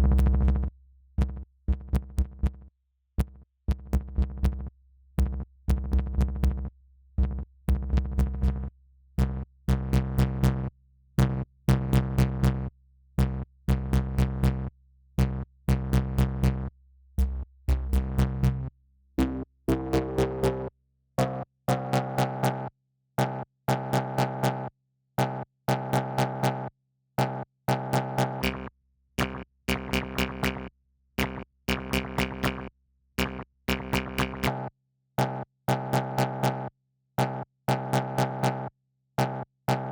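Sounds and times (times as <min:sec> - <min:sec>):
deep bass notes: 0:00.0 - 0:02.4, 0:17.2 - 0:20.6.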